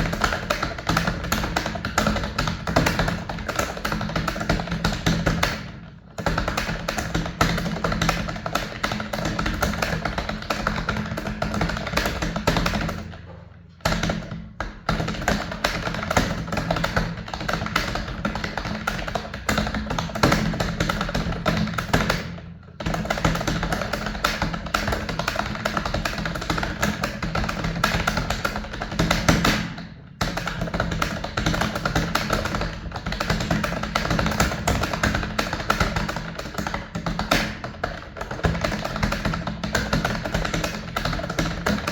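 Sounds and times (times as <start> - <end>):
music with tapping percussive beat: 0.0 - 41.9.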